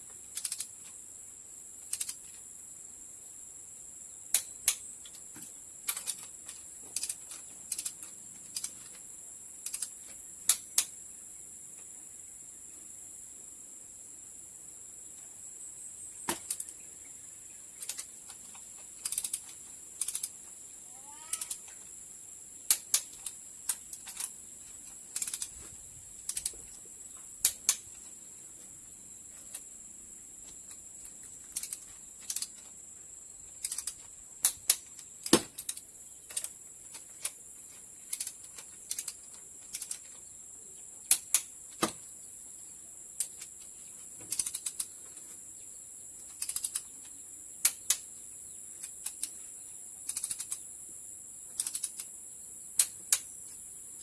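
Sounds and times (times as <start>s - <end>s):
high insect trill: 0.0s - 54.0s
hand tools clicking and clinking: 22.7s - 26.8s, 30.4s - 32.8s, 33.6s - 37.4s.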